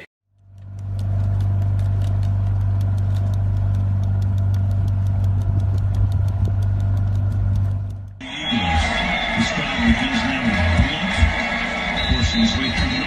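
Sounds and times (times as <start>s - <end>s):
low machine hum: 0.3s - 13.0s
faint ticks: 0.4s - 8.2s.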